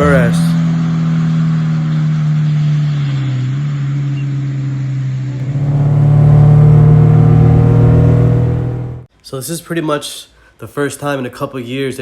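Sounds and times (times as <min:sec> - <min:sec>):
car engine running: 0:00.0 - 0:09.1.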